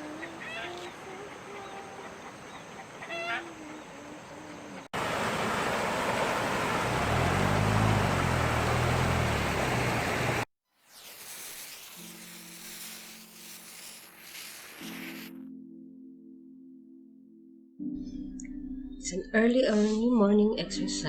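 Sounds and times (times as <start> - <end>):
geese honking: 2.7 - 3.5
passing motor vehicle: 5.0 - 10.5.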